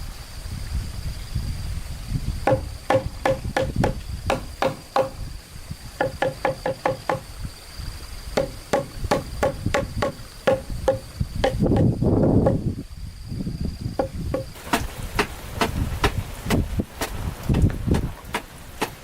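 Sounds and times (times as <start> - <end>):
high insect buzz: 0.0 - 17.7
hammer blows on wood: 2.4 - 5.3, 6.0 - 7.3, 8.4 - 12.7, 14.0 - 19.0.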